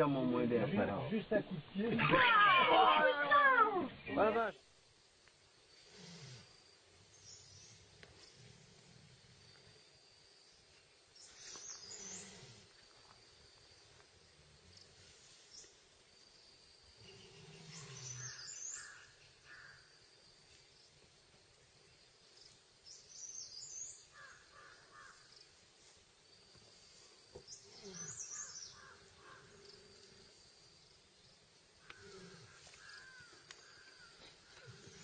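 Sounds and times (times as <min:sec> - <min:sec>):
bird chirps: 0:11.2 - 0:12.3, 0:17.0 - 0:19.8, 0:22.9 - 0:24.4, 0:27.4 - 0:29.4.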